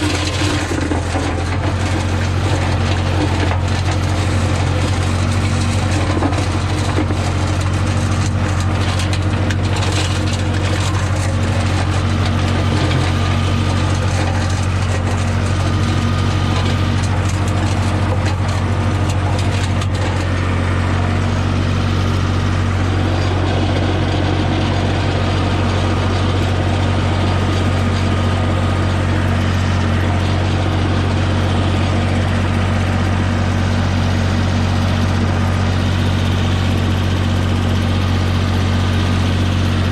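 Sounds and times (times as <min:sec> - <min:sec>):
tractor engine running under load: 0:00.0 - 0:39.9.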